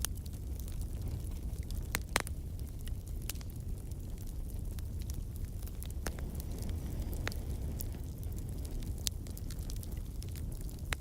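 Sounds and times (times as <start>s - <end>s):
sharp pops of fire: 0.0s - 11.0s
wood fire crackling: 0.0s - 11.0s.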